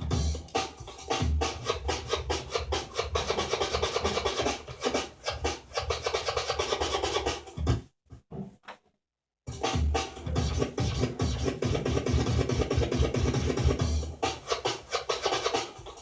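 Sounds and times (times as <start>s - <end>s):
beat: 0.0s - 5.7s, 9.5s - 16.0s
turntable scratching: 0.0s - 7.8s, 9.5s - 16.0s.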